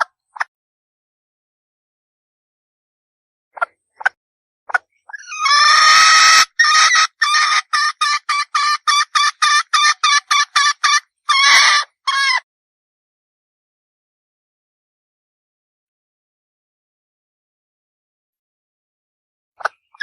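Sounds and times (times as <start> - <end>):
hen cackling and clucking: 4.7 - 12.4.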